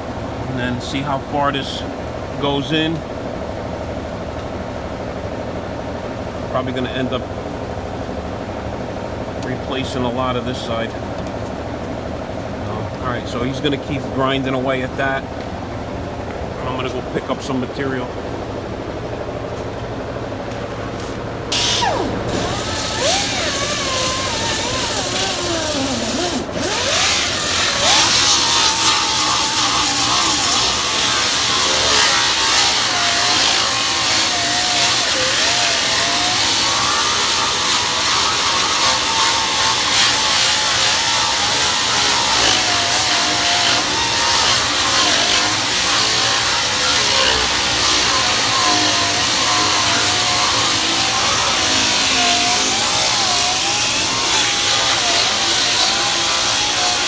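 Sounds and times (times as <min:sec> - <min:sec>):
grinder on sheet metal: 0:21.5 - 0:57.0.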